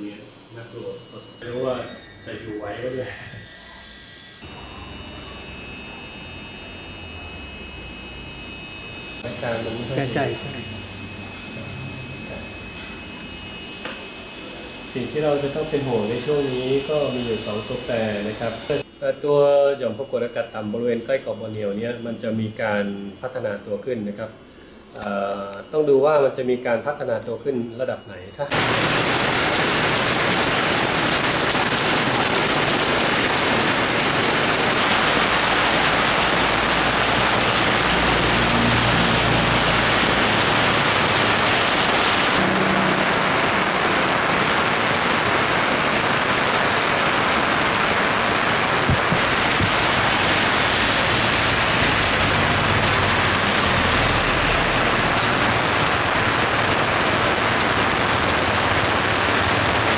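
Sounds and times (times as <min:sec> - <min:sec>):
heavy rain: 0:28.5 - 0:59.9.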